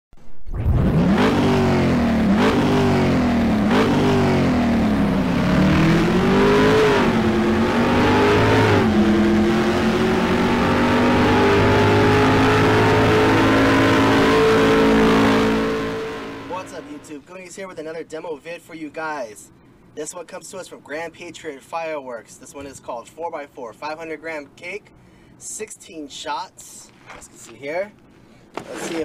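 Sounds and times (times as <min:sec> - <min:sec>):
car engine revving: 0:00.5 - 0:17.1.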